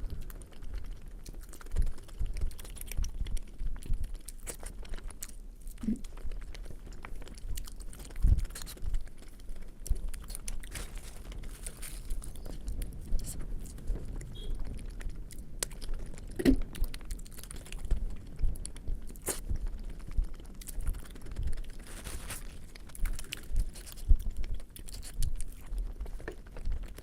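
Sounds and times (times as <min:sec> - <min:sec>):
person chewing with mouth clicks: 0:00.0 - 0:27.0.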